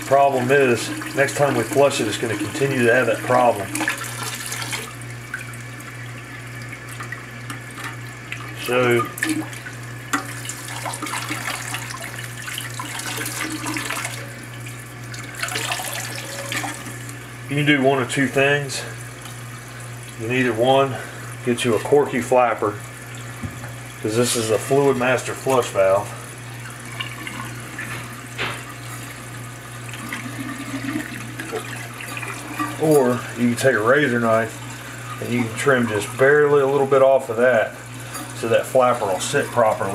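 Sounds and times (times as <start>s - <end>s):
toilet tank refilling: 0.0s - 39.9s.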